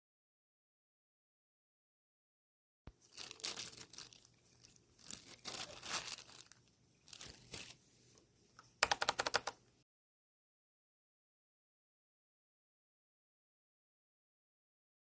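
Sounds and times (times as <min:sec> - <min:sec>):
packaging crinkling and tearing: 0:03.0 - 0:07.8.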